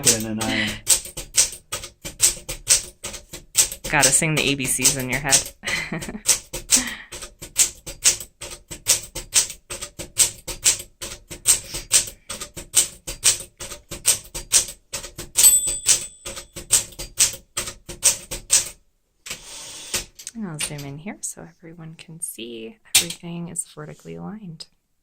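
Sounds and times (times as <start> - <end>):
typewriter bell ringing: 0.0 - 1.4, 15.4 - 17.2
manual typewriter key strikes: 0.0 - 18.8.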